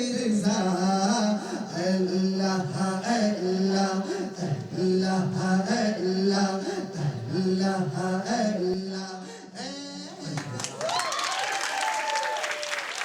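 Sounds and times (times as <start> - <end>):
group chanting in unison: 0.9 - 11.0.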